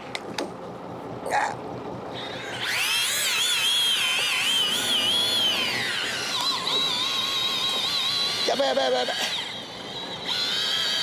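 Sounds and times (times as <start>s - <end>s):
fishing reel whining: 2.2s - 11.0s.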